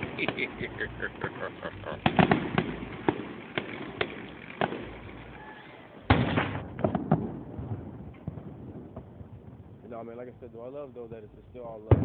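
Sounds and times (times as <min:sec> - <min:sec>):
aerial fireworks bangs: 0:02.0 - 0:05.1, 0:06.0 - 0:09.6
small firework pops: 0:02.0 - 0:05.4, 0:06.1 - 0:09.2.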